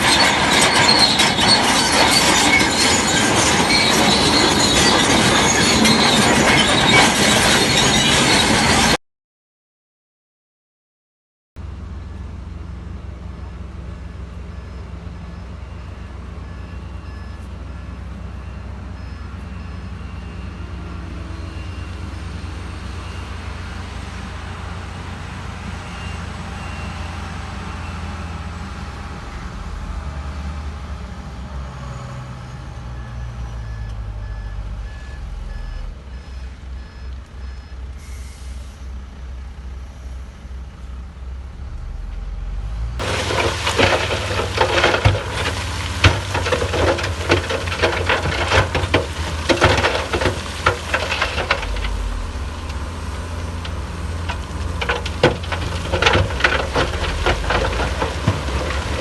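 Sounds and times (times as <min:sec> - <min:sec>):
diesel machinery running: 0:00.0 - 0:09.0, 0:11.6 - 0:59.0
reversing alarm beeping: 0:13.4 - 0:23.6, 0:25.8 - 0:28.4, 0:31.9 - 0:38.5.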